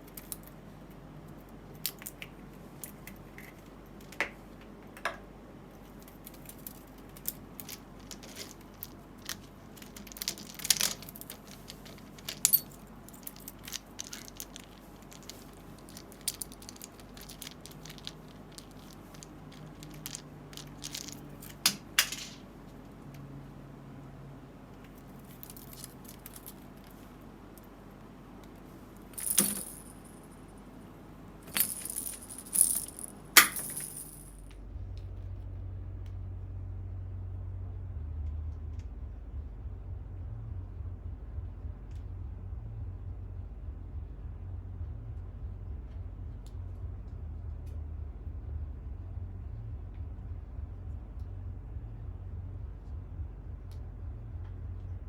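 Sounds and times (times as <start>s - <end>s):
small hard objects clattering: 5.9s - 22.4s, 25.2s - 27.1s, 29.0s - 30.2s, 31.5s - 34.4s.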